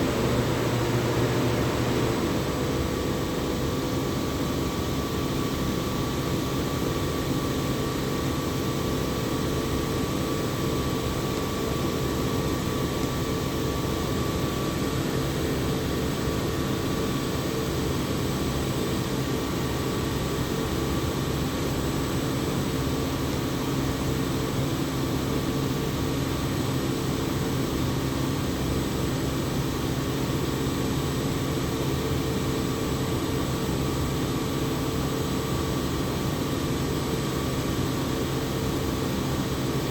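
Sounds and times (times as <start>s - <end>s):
air compressor humming: 0.0s - 5.3s.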